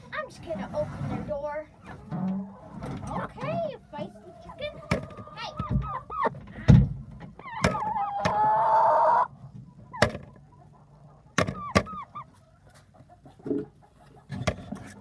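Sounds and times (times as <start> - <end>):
chickens squawking and clucking: 0.0 - 15.0
sharp knocks: 4.8 - 6.0, 7.6 - 8.4, 10.0 - 10.4, 11.4 - 12.0.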